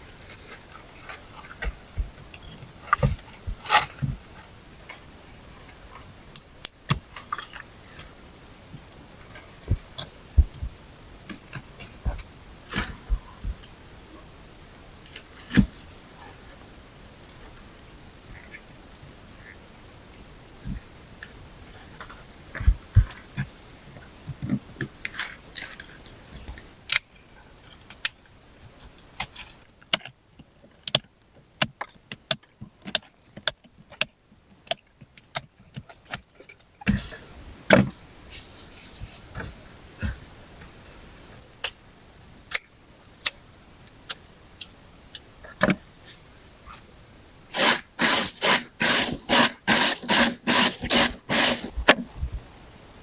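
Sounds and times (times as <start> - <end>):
fast even tool strokes: 47.5 - 51.8.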